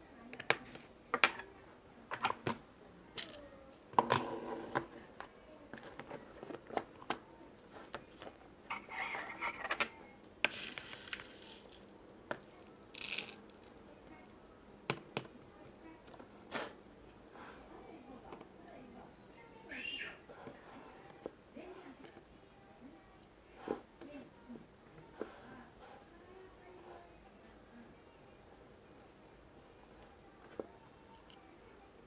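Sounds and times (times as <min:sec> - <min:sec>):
beads clicking together: 0:10.5 - 0:13.7.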